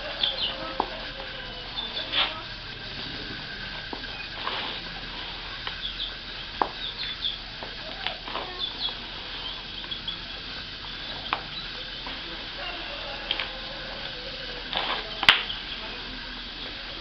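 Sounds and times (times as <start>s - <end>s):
faint high chirps: 0.0s - 17.0s
steady background hum: 0.0s - 17.0s.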